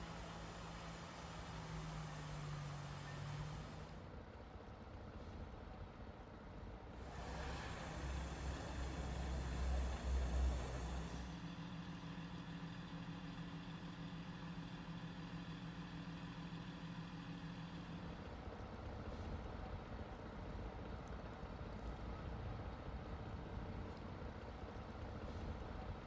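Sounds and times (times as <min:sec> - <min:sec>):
vehicle engine running: 0:00.0 - 0:04.0, 0:07.0 - 0:19.2.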